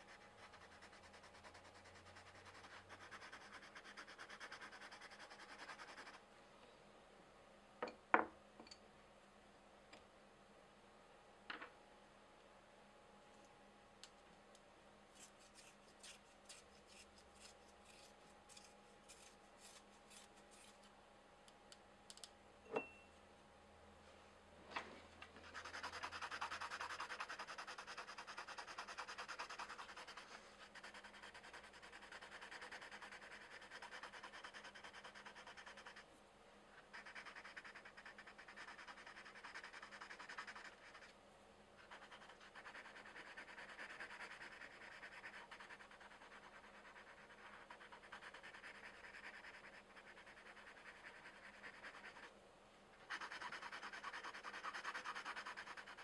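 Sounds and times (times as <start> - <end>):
colored pencil scratching on paper: 0.0 - 6.2, 15.2 - 20.8, 25.4 - 36.1, 36.8 - 41.1, 41.8 - 52.3, 53.0 - 56.0.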